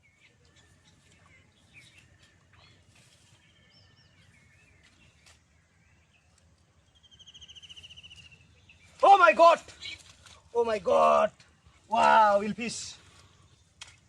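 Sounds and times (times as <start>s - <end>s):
small birds chirping: 0.0s - 10.8s.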